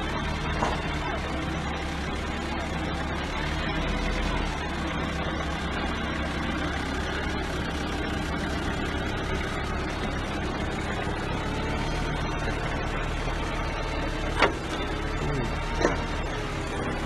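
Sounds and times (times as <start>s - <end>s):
forklift engine running: 0.0s - 17.0s.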